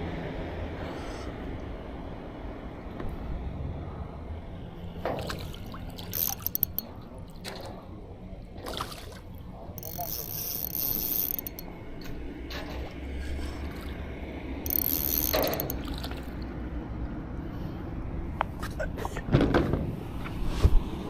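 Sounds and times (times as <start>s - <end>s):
fishing reel ratcheting: 6.0s - 7.0s, 9.8s - 12.1s, 14.6s - 16.5s.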